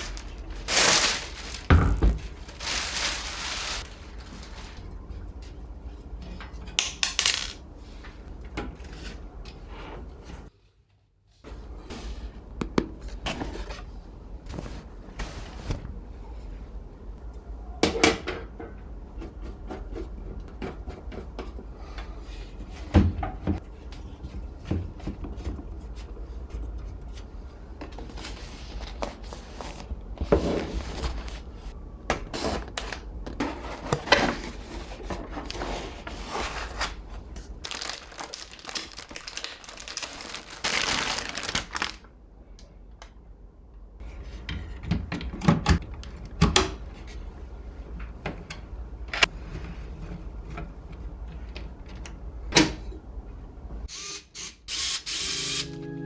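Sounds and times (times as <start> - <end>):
crinkling rustles: 0.0 - 5.6, 7.0 - 7.6, 27.9 - 42.1.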